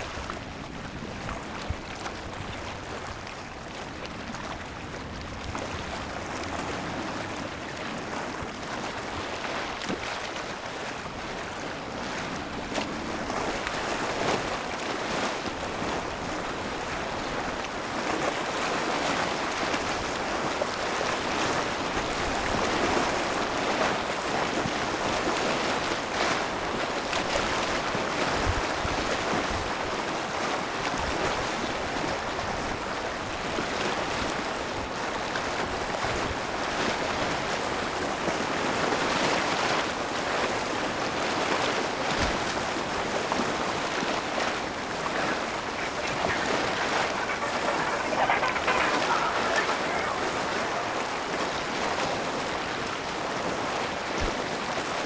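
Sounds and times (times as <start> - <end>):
sea water washing: 44.2 - 53.2.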